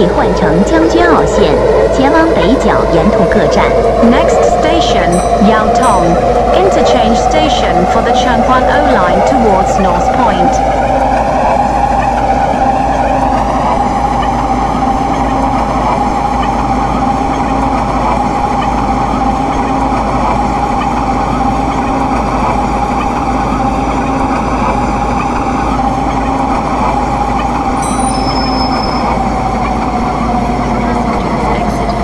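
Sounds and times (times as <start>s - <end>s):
electric train motor whine: 0.0s - 32.0s
wheel and track rumble: 0.0s - 32.0s.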